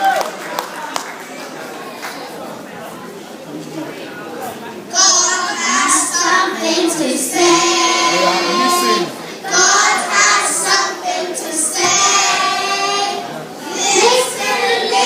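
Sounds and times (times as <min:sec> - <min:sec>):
children singing together: 0:04.9 - 0:15.0.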